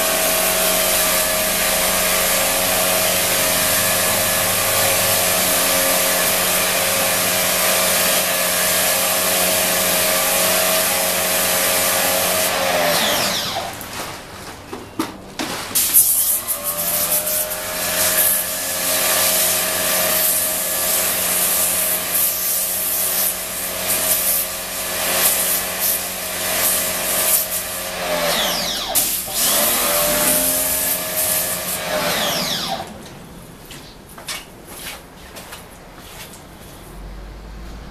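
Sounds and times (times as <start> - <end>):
pressure washer motor hum: 0.0 - 13.9, 15.8 - 33.1
water spray hiss: 19.0 - 24.6.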